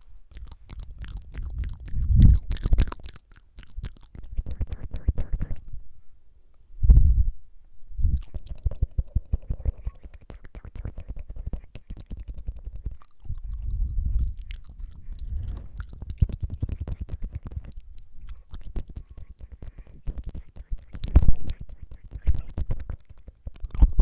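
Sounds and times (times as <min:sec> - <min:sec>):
wet tongue fluttering and clicking: 0:00.0 - 0:05.7, 0:07.8 - 0:24.0.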